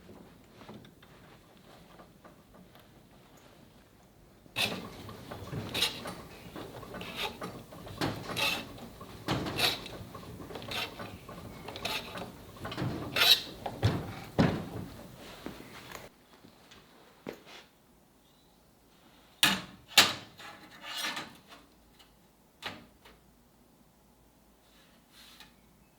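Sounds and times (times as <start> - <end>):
knocks and clunks: 4.5 - 16.1
tool clatter: 4.6 - 15.4.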